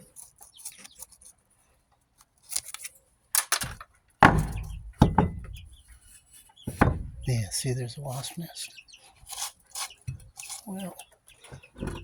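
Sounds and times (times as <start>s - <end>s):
hard objects knocking and scraping: 3.4s - 5.8s, 6.7s - 7.4s.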